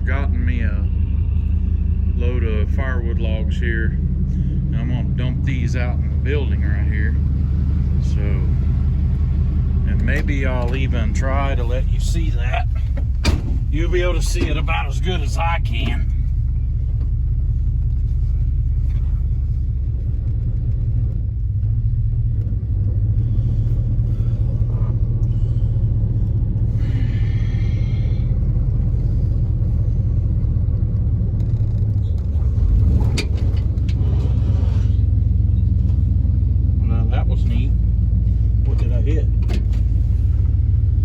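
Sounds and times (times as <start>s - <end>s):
dump truck engine running: 0.0s - 41.0s.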